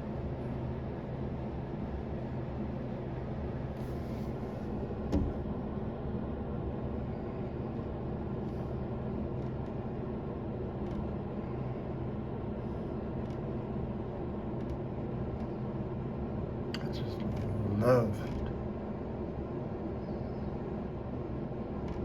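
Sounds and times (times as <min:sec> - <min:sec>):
car engine and road hum: 0:16.6 - 0:18.6.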